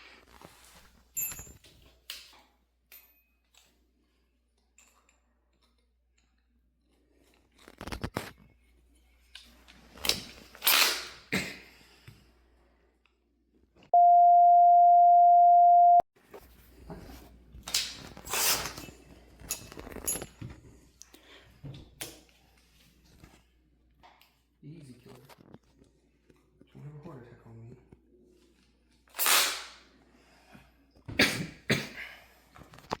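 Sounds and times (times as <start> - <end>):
steady electronic beep: 14.0 - 16.0
rustling and clattering: 16.2 - 20.9.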